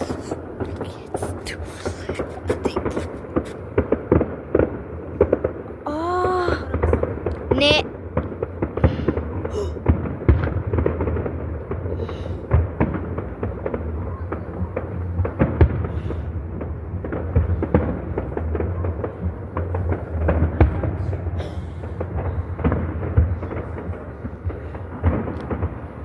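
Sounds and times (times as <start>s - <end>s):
fireworks bangs and crackles: 0.0s - 26.0s
low rumble: 6.6s - 26.0s.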